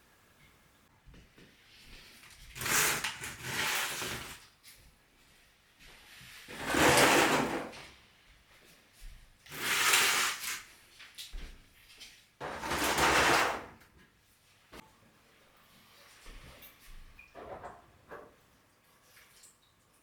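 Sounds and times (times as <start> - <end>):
scraping sliding strokes: 9.5 - 10.6.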